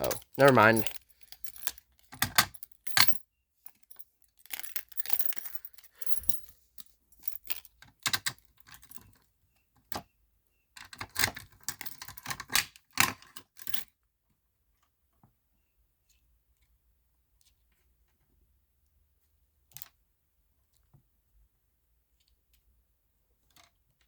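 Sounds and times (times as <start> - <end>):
clicks and metallic rattles: 0.0 - 3.2.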